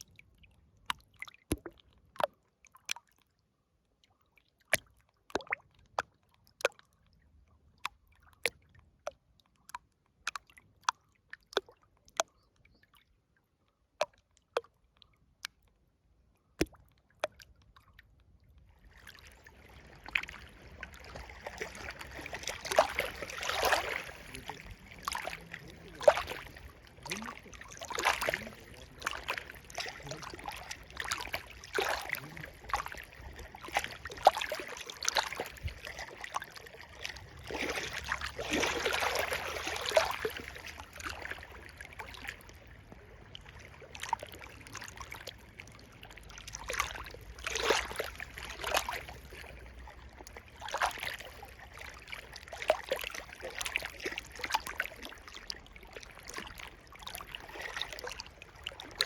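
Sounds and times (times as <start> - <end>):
water splashes: 0.8 - 3.2, 4.6 - 6.9, 16.6 - 59.0
river water flowing and gurgling: 18.6 - 59.0
rush of water: 18.8 - 59.0.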